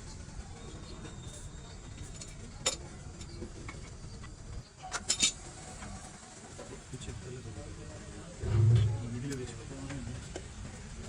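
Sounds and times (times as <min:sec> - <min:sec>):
low steady rumble: 0:08.4 - 0:09.6.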